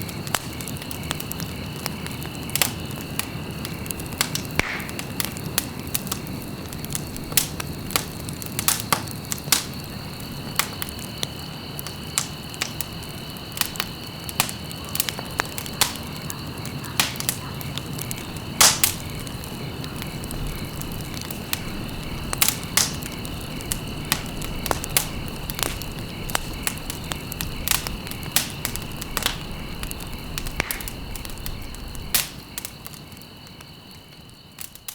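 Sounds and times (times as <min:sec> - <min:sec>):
low rumble of flames: 0:00.0 - 0:34.9
wood fire crackling: 0:00.0 - 0:34.9.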